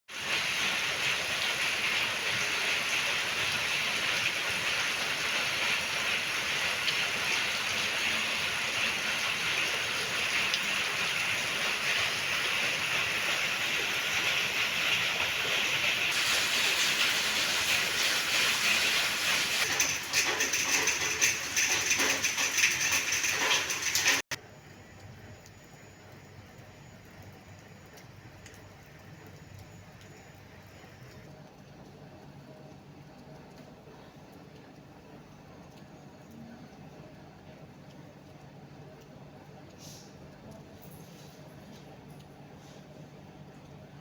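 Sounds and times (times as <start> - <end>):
steady rainfall: 0.1 - 24.3.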